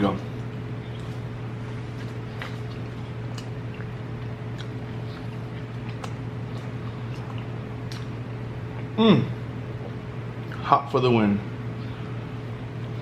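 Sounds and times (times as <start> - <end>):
steady low hum: 0.0 - 13.0
chewing and wet mouth noises: 0.3 - 9.0, 9.7 - 10.7.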